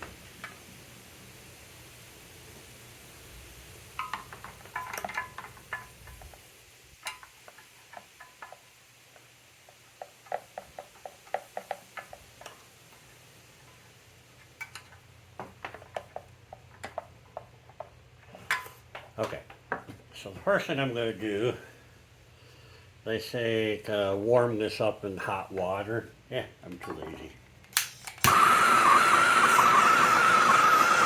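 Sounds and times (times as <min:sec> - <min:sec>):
hand tools clicking and tapping: 0:04.0 - 0:06.4, 0:07.0 - 0:13.8, 0:14.4 - 0:20.0.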